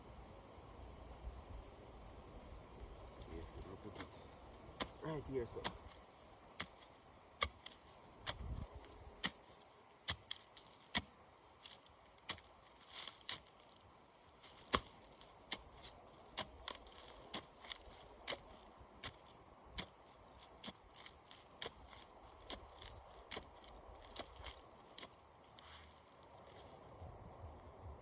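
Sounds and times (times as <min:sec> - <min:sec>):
metal tool chopping into soil: 0:04.8 - 0:13.7, 0:14.4 - 0:25.1.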